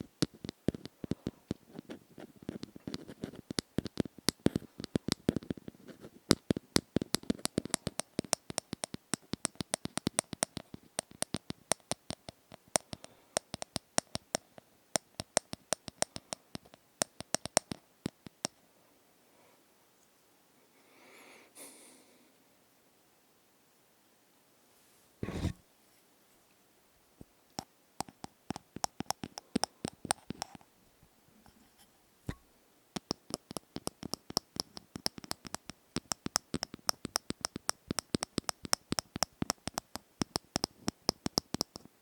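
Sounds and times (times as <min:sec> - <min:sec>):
close-miked tapping and clicks: 0:00.0 - 0:18.6, 0:27.6 - 0:30.7, 0:33.0 - 0:42.0.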